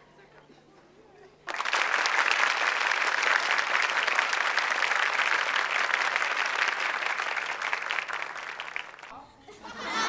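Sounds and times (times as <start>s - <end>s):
audience applause: 1.4s - 9.1s.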